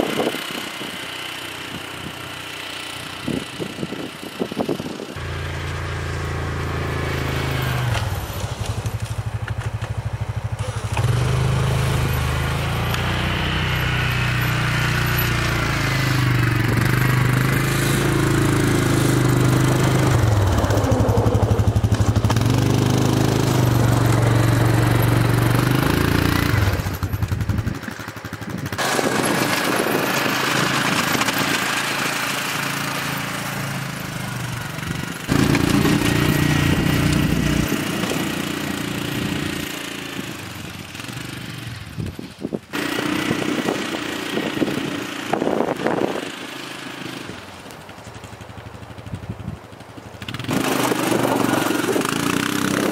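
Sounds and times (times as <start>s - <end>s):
vehicle engine running: 0.0s - 52.9s
snow being plowed: 5.2s - 21.0s, 28.2s - 48.8s, 50.3s - 52.9s.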